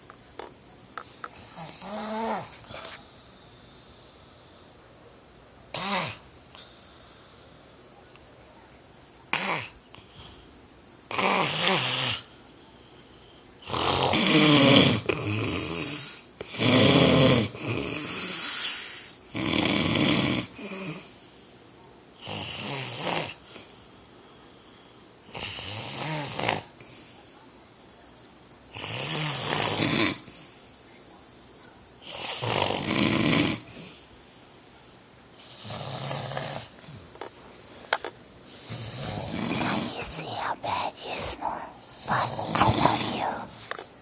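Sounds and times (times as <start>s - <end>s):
man snoring loudly: 13.6s - 18.5s, 19.4s - 21.0s, 28.8s - 30.2s, 32.1s - 33.8s, 35.5s - 36.7s, 38.7s - 43.5s.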